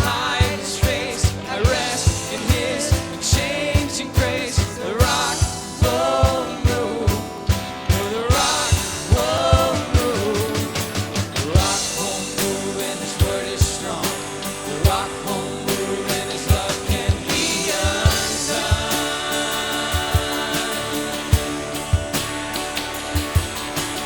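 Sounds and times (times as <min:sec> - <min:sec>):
band playing rock song: 0:00.0 - 0:24.0
steady drum beat: 0:00.0 - 0:24.0
wordless singing: 0:00.0 - 0:24.0.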